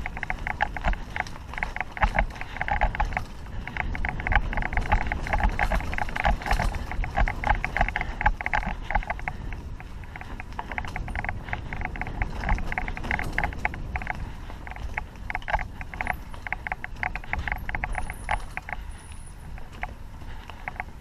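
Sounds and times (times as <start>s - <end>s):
bike rattling clatter: 0.0s - 21.0s
bike thudding over bumps: 0.0s - 21.0s.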